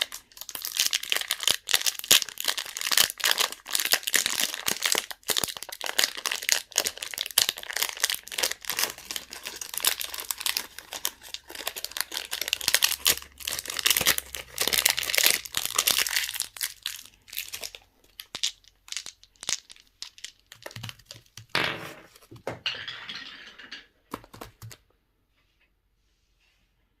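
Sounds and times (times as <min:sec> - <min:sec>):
packaging crinkling and tearing: 0:00.0 - 0:21.5.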